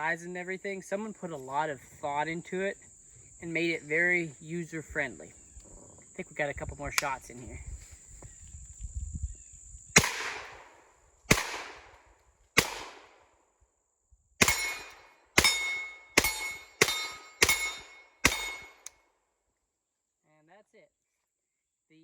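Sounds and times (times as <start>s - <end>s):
carbine gunshots: 10.0s - 12.0s, 12.6s - 13.2s, 14.4s - 18.9s
metallic ring: 14.5s - 18.9s.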